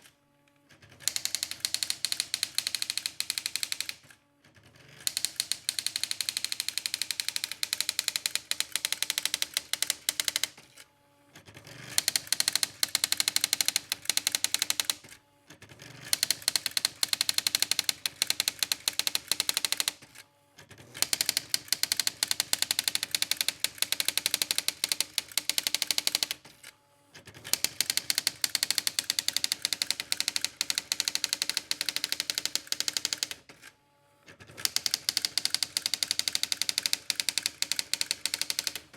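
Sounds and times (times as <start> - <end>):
daisy wheel printer striking: 34.7 - 38.8.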